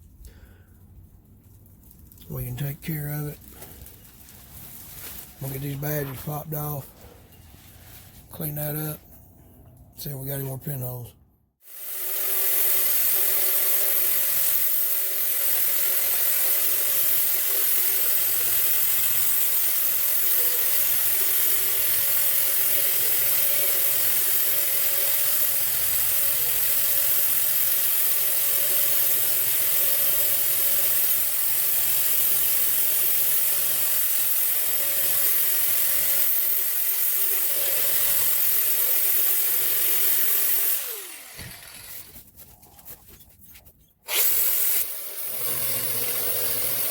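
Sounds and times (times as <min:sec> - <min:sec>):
power tool scrubbing rust off steel: 0:11.6 - 0:46.9.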